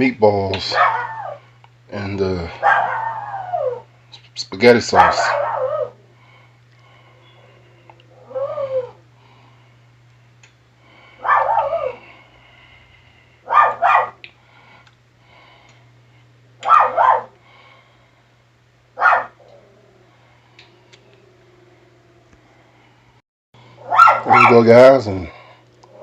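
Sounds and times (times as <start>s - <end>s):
dog barking: 0.6s - 1.4s, 2.6s - 3.8s, 5.0s - 6.0s, 11.2s - 12.0s, 13.5s - 14.2s, 16.6s - 17.4s, 19.0s - 19.4s, 23.9s - 24.6s.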